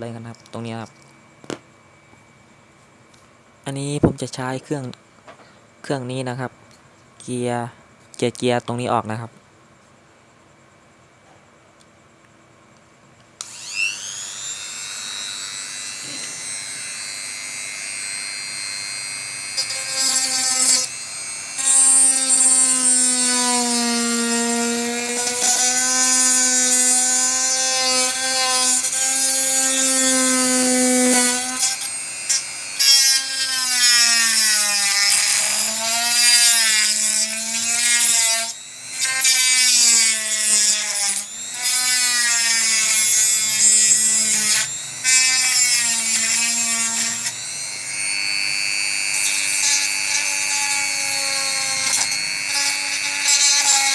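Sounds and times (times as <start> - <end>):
rotary tool whining: 13.4 - 53.9.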